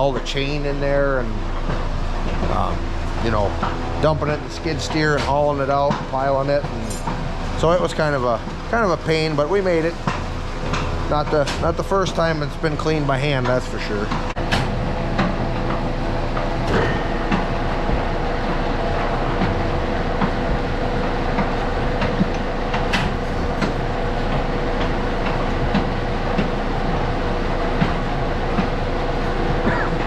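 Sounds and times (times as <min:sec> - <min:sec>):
electric drive humming: 0:00.0 - 0:30.0
metal clanks and knocks: 0:03.6 - 0:09.0, 0:09.6 - 0:27.1.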